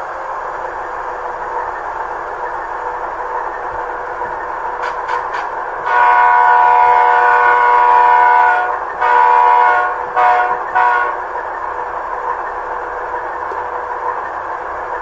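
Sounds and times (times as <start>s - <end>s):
diesel engine running: 0.0s - 15.0s
model train horn blasts: 5.8s - 11.3s.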